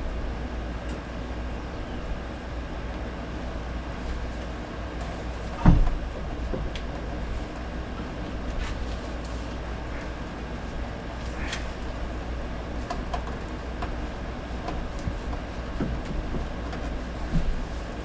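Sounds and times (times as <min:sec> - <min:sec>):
steady low rumble: 0:00.0 - 0:18.0.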